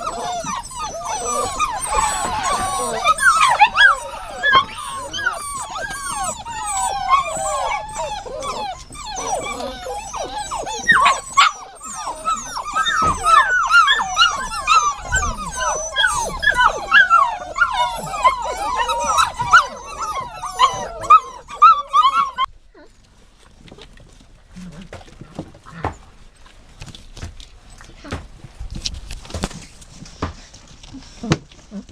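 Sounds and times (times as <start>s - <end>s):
dogs whining and yipping: 0.0s - 23.0s.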